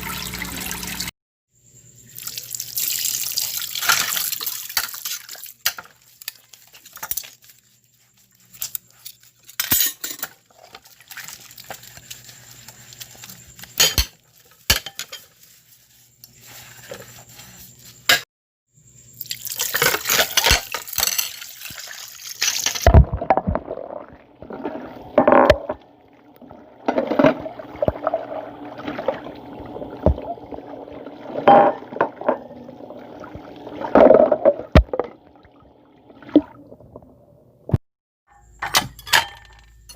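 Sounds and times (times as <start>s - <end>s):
liquid pouring: 2.2s - 4.8s, 19.2s - 37.1s
glass clinking: 31.4s - 32.5s.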